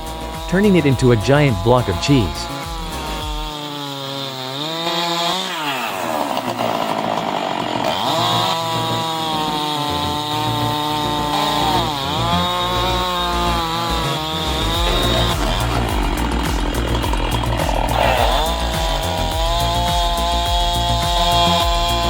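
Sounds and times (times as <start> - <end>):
chainsaw cutting log: 0.0 - 22.0.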